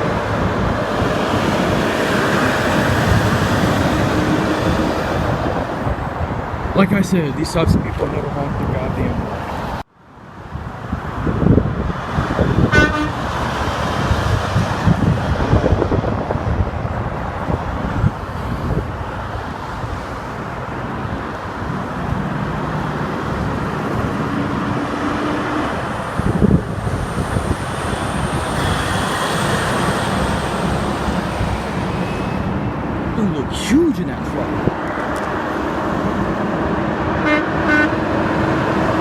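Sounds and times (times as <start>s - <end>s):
highway traffic passing: 0.0s - 39.0s
horn toot: 12.6s - 13.3s, 37.2s - 38.1s
long steady horn tone: 12.6s - 13.4s, 37.2s - 38.4s.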